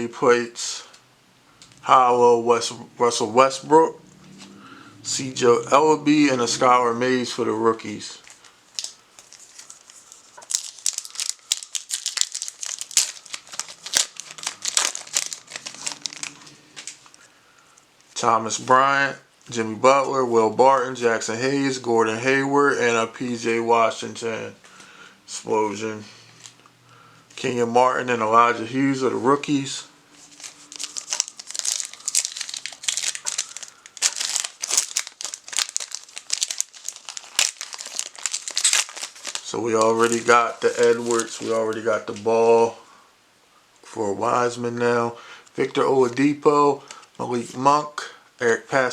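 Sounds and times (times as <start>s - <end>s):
plastic wrapper tearing and crinkling: 8.2s - 17.3s, 30.2s - 42.3s.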